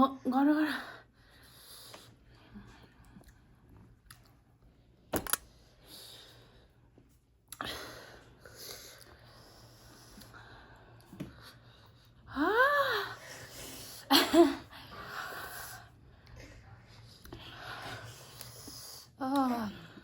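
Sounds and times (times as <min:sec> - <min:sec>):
quiet chewing: 0:01.8 - 0:04.7.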